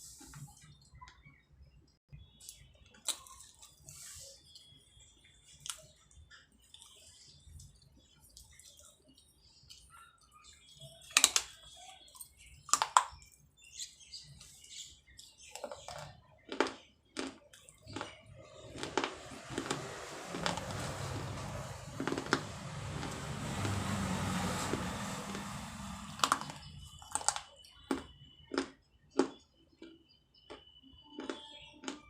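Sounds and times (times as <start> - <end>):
pottery being chewed crunching: 15.1 - 24.0, 26.2 - 32.0.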